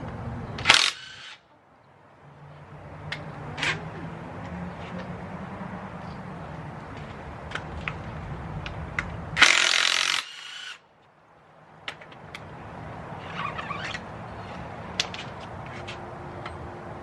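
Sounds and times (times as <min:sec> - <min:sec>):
loud rattling tool burst: 0:00.6 - 0:01.4, 0:09.4 - 0:10.8.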